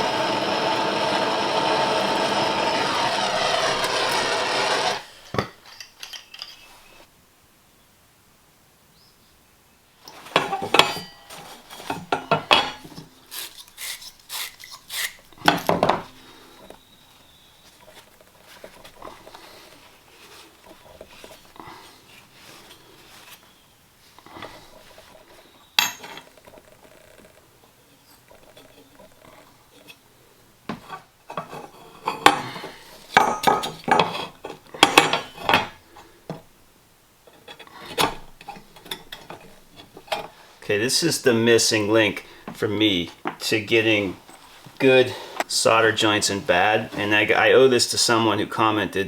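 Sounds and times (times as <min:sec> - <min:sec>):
metal scrubbing strokes: 0:00.0 - 0:05.9
metal pipe fittings clinking: 0:03.9 - 0:06.9, 0:10.1 - 0:15.9, 0:25.8 - 0:26.3, 0:33.1 - 0:35.7.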